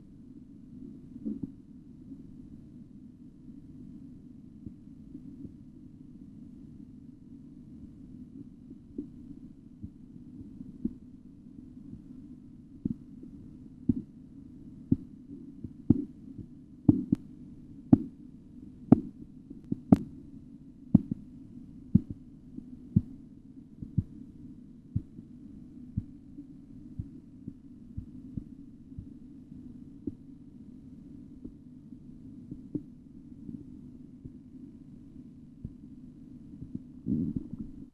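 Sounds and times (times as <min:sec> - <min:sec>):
low hum: 0:00.0 - 0:37.9
heartbeat taps through stethoscope: 0:01.2 - 0:01.6, 0:04.6 - 0:04.8, 0:08.9 - 0:09.2, 0:09.8 - 0:11.0, 0:12.8 - 0:13.1, 0:13.8 - 0:14.2, 0:14.8 - 0:17.3, 0:17.9 - 0:18.2, 0:18.9 - 0:20.2, 0:20.9 - 0:21.3, 0:21.9 - 0:23.2, 0:23.8 - 0:24.2, 0:24.9 - 0:25.3, 0:25.9 - 0:26.2, 0:26.9 - 0:29.2, 0:30.0 - 0:30.2, 0:32.5 - 0:32.9, 0:35.6 - 0:35.8, 0:36.5 - 0:37.9.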